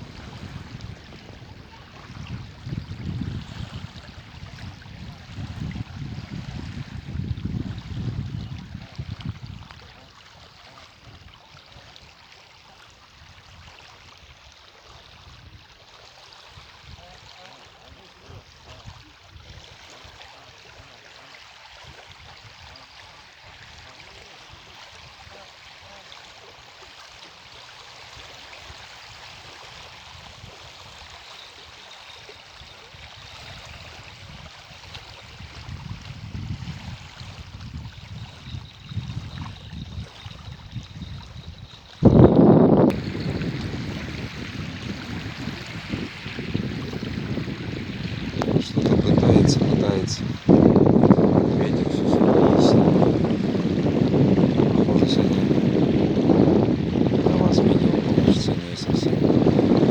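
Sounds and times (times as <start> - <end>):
wind buffeting microphone: 0.0 - 10.1, 32.3 - 59.9.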